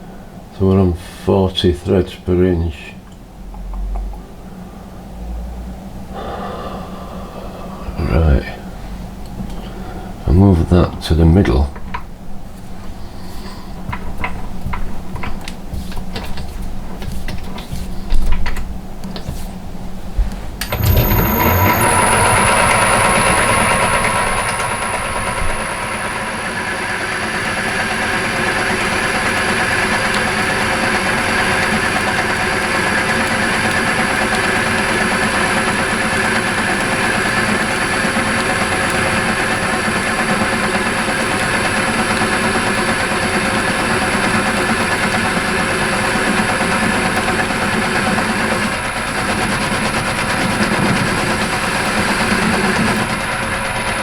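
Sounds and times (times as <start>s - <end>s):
lathe whirring: 20.5s - 54.0s.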